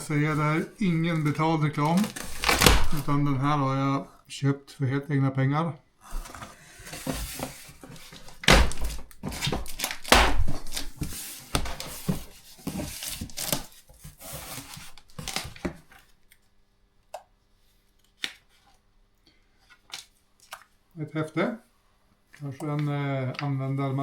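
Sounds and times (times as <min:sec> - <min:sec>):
cardboard box rustling and tearing: 0:00.0 - 0:03.6, 0:06.1 - 0:15.8
loud thumps: 0:02.3 - 0:03.6, 0:08.4 - 0:10.8.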